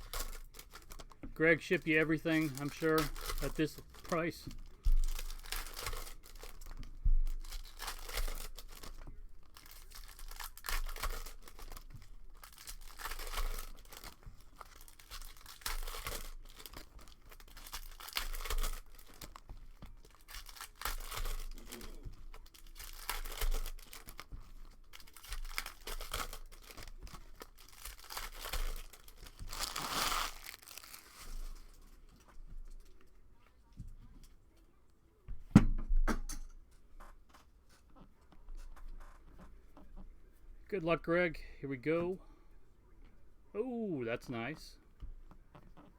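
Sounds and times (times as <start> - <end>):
plastic wrapping tearing and crinkling: 0.0 - 33.1.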